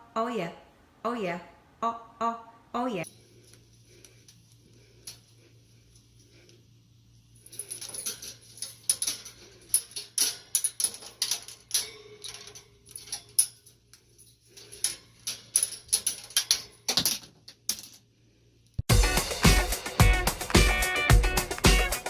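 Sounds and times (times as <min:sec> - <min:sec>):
metallic jingling and rattling: 0:07.3 - 0:18.0.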